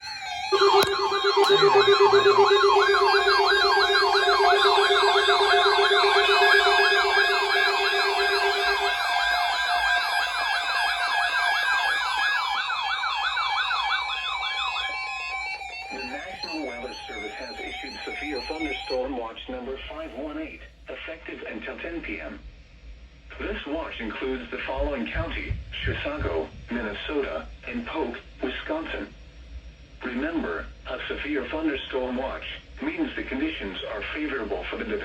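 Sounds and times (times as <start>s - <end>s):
steady low tone: 0.0s - 10.8s
electronic sirens sweeping: 0.0s - 19.1s.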